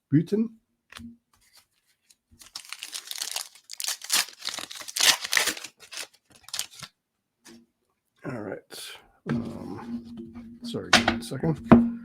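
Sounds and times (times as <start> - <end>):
wrapper crinkling and tearing: 2.0 - 6.9.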